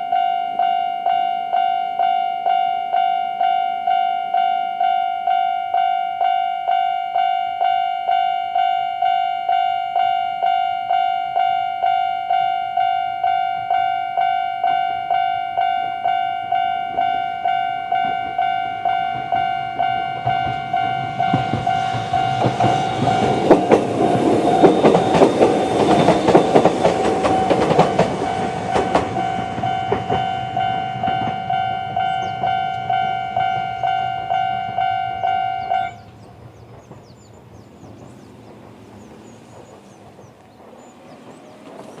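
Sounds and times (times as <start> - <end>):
level-crossing alarm dinging: 0.0 - 36.1
train wheels clattering on rails: 15.1 - 42.0.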